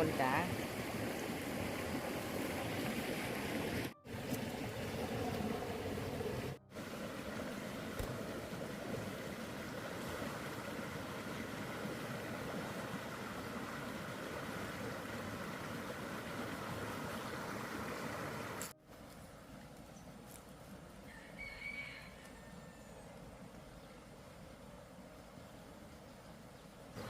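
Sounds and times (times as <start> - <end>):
water flowing: 0.0 - 18.8.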